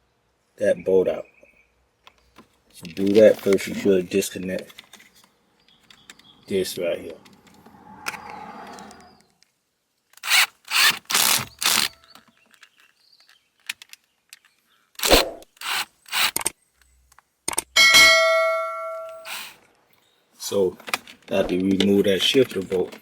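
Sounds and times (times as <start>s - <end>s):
hand tools scraping: 2.8s - 5.3s, 19.1s - 19.6s
ringing metal clang: 17.8s - 19.3s.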